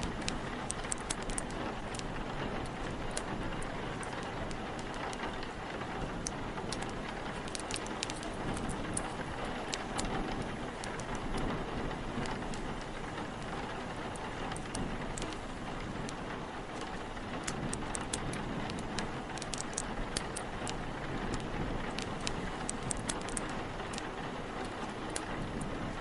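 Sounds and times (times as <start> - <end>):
fire crackles: 0.0 - 26.0
steady rain with wind: 0.0 - 26.0.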